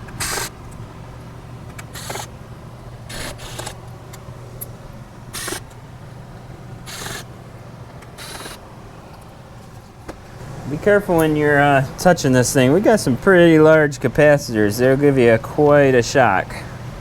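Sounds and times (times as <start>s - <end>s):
screwdriver whirring scrape: 0.0s - 0.6s, 1.7s - 2.3s, 3.0s - 3.8s, 5.3s - 5.8s, 6.8s - 7.3s, 8.0s - 8.6s
steady low hum: 0.0s - 17.0s.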